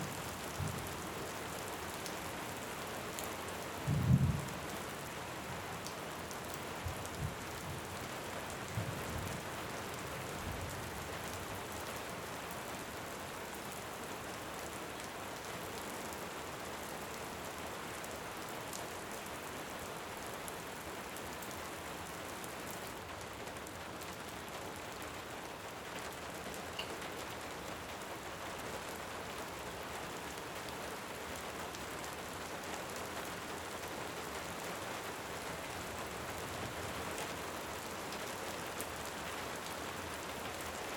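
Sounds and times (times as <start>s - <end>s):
steady rain: 0.0s - 40.9s
low rumbles of thunder: 3.9s - 4.5s.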